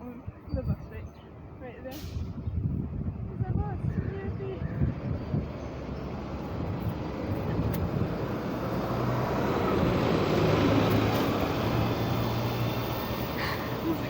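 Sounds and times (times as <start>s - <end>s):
bus driving past: 4.3s - 14.0s.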